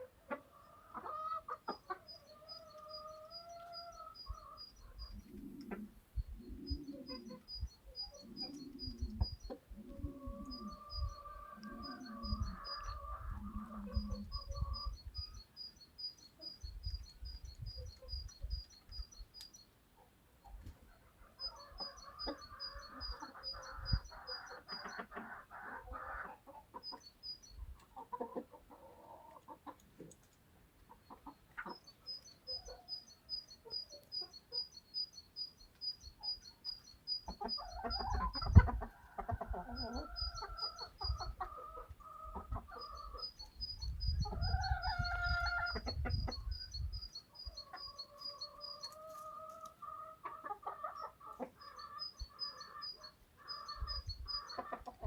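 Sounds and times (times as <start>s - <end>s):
chickens clucking: 0.0s - 55.0s
rapid high ticking chirps: 14.4s - 19.7s, 31.2s - 38.3s, 42.8s - 49.0s.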